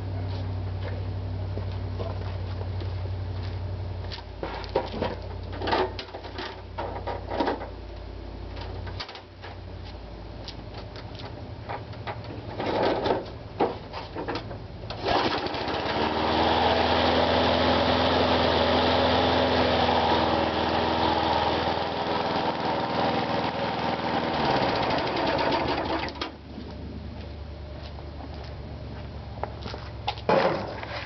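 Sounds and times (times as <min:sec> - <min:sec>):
lawn mower engine running: 0:14.9 - 0:26.8.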